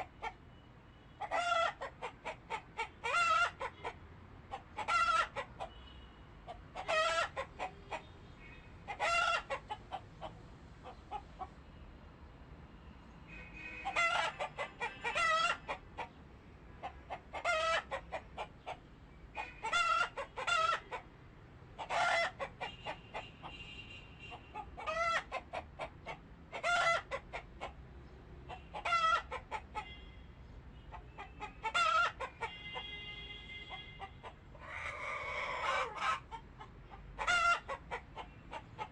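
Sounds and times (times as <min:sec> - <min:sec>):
chickens calling loudly: 0:01.2 - 0:05.8, 0:06.4 - 0:08.1, 0:08.9 - 0:11.6, 0:13.8 - 0:16.2, 0:16.8 - 0:21.1, 0:21.8 - 0:23.6, 0:24.3 - 0:27.8, 0:28.5 - 0:30.0, 0:30.9 - 0:33.0, 0:33.7 - 0:38.9.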